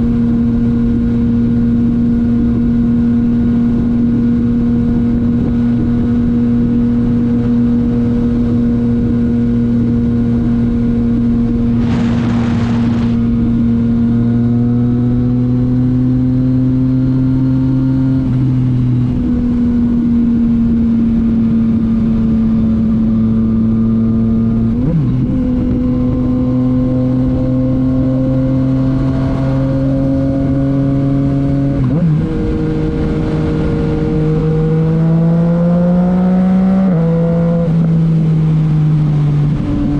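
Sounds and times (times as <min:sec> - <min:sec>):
short rush of noise: 0:11.7 - 0:13.9.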